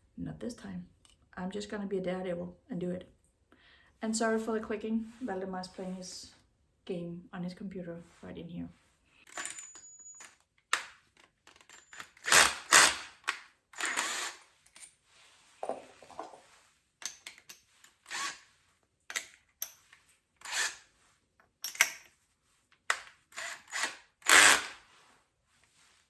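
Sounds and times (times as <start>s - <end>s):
tools clicking and knocking: 9.3s - 14.9s, 17.0s - 18.0s, 19.1s - 20.8s, 21.4s - 22.1s.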